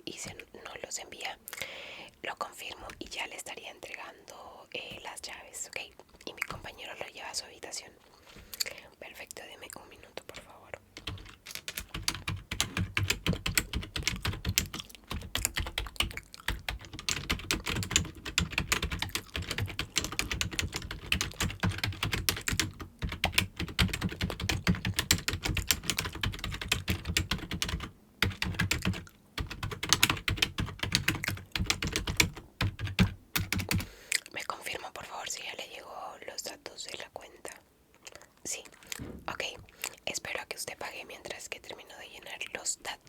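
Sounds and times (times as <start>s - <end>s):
fast typing on keyboard: 11.0s - 34.0s.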